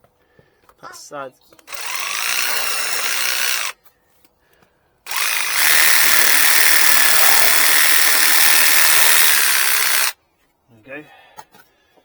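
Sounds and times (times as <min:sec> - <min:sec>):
power cutting tool cutting: 0:01.7 - 0:03.7, 0:05.1 - 0:10.2.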